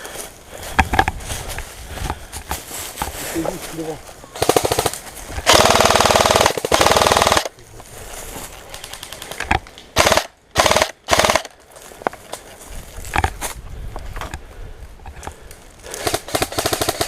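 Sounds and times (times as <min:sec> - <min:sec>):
airsoft gun firing full-auto bursts: 0:04.4 - 0:07.5, 0:10.0 - 0:11.6, 0:16.0 - 0:17.0.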